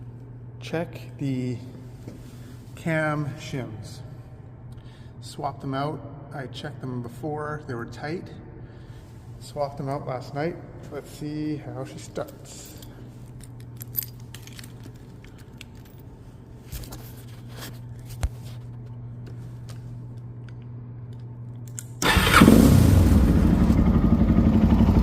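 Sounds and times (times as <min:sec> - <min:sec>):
low hum: 0:18.7 - 0:25.0
motorcycle engine starting and running: 0:22.0 - 0:25.0.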